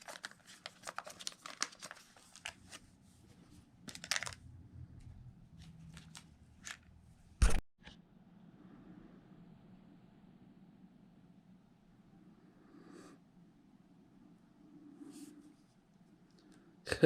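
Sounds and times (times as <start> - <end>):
rustling handling noises: 0.0 - 4.4, 5.6 - 6.9.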